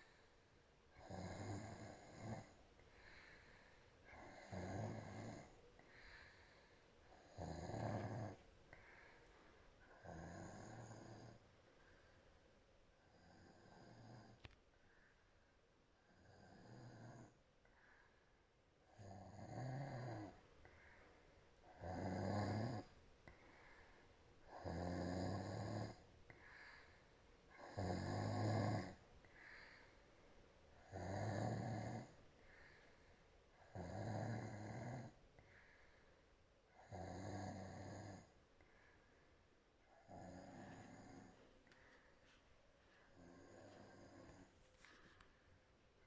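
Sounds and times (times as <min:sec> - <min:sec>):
quiet breathing: 0:00.0 - 0:46.0
woman snoring: 0:01.0 - 0:02.6, 0:04.0 - 0:05.6, 0:07.1 - 0:08.8, 0:09.9 - 0:11.4, 0:13.0 - 0:14.5, 0:16.0 - 0:17.4, 0:18.9 - 0:20.4, 0:21.7 - 0:23.0, 0:24.5 - 0:26.4, 0:27.5 - 0:29.0, 0:30.8 - 0:32.2, 0:33.6 - 0:35.2, 0:36.8 - 0:38.4, 0:39.9 - 0:41.4, 0:43.1 - 0:44.5.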